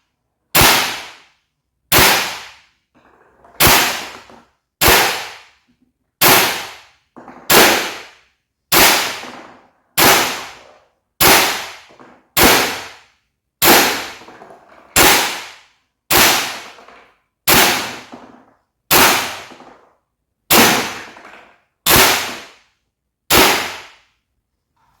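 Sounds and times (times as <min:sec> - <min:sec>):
airsoft rifle single shots: 0:01.9 - 0:02.6, 0:23.3 - 0:24.0.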